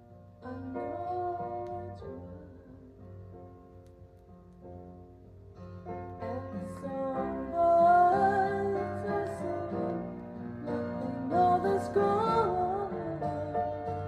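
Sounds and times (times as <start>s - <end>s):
soft piano chords: 0.0s - 14.0s
woman singing: 0.4s - 2.9s, 6.2s - 10.2s, 10.8s - 13.7s.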